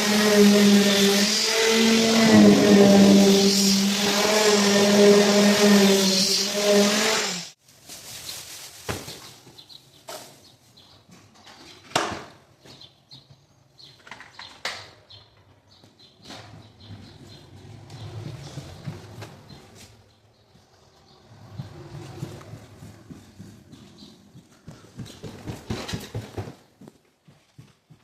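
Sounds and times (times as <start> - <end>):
machine motor humming: 0.0 - 7.5.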